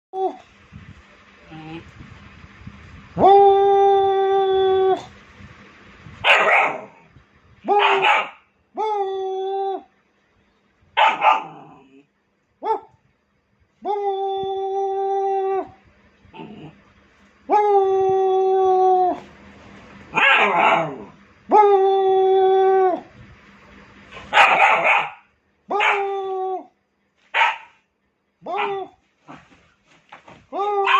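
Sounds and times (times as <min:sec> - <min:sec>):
dog howling: 0:03.2 - 0:05.1, 0:07.7 - 0:09.9, 0:13.8 - 0:15.8, 0:17.5 - 0:19.3, 0:20.1 - 0:23.1, 0:24.4 - 0:26.7, 0:28.4 - 0:29.0, 0:30.5 - 0:30.9
dog barking harshly: 0:06.2 - 0:07.0, 0:07.7 - 0:08.5, 0:11.0 - 0:11.8, 0:20.1 - 0:21.1, 0:24.2 - 0:26.1, 0:27.3 - 0:27.8, 0:28.4 - 0:29.4.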